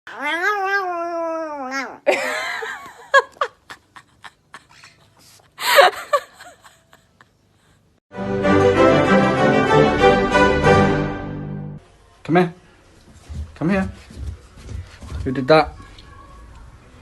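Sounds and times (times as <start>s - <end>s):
pet crying: 0.1s - 2.1s
music: 8.1s - 11.8s.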